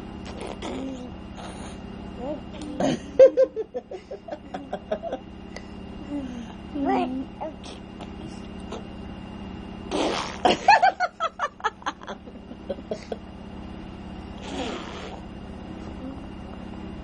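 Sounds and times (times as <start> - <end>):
imitation fart sounds: 0.2 - 1.7, 9.9 - 10.7, 14.4 - 15.3.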